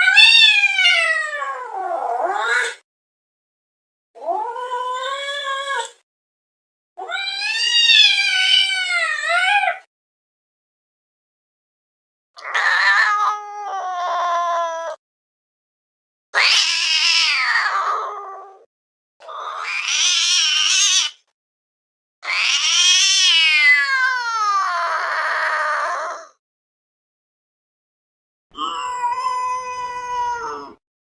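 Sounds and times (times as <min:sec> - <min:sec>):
cat yowling: 0:00.0 - 0:02.8, 0:07.0 - 0:09.9, 0:12.4 - 0:15.0, 0:16.4 - 0:18.7, 0:19.3 - 0:21.2, 0:22.2 - 0:26.4, 0:28.6 - 0:30.8.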